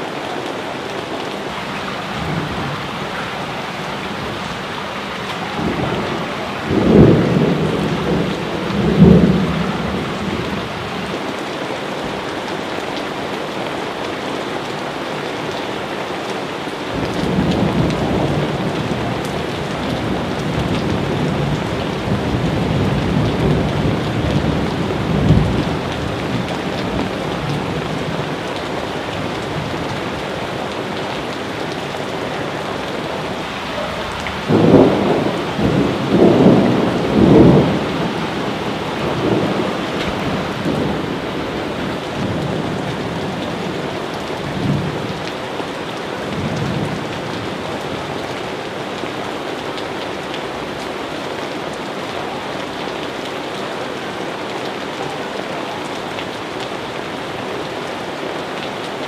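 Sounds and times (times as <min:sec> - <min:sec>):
heavy rain: 0:00.0 - 0:59.0
thunder rumbling: 0:01.5 - 0:11.1, 0:17.0 - 0:45.2.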